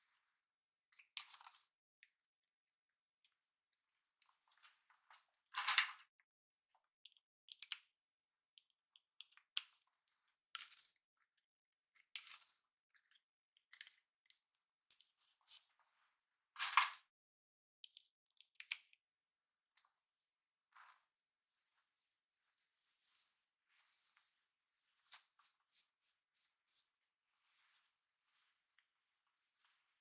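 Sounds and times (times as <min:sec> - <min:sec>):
hair brushing and rustling: 0:29.5 - 0:30.0.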